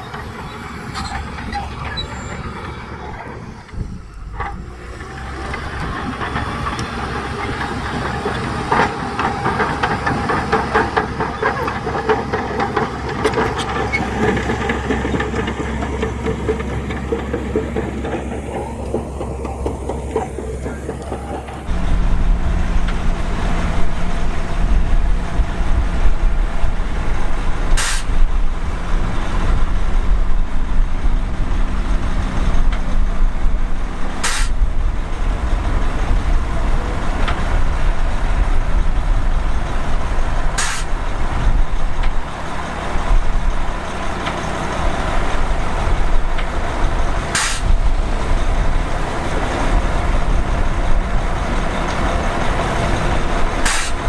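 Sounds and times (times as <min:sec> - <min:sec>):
diesel machinery rumbling: 0:00.0 - 0:54.0
short sharp hisses: 0:27.8 - 0:28.2, 0:34.2 - 0:34.6, 0:40.6 - 0:41.0, 0:53.7 - 0:54.0.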